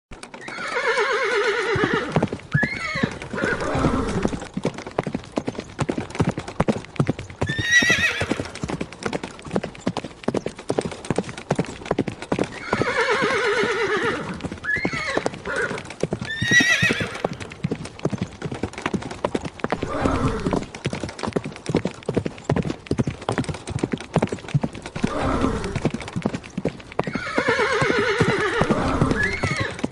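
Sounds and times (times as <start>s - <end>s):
horse hooves clip-clopping: 0.1s - 29.9s
horse whinnying: 0.4s - 4.5s, 7.4s - 8.8s, 12.5s - 17.7s, 19.8s - 20.7s, 25.0s - 25.9s, 27.0s - 29.8s.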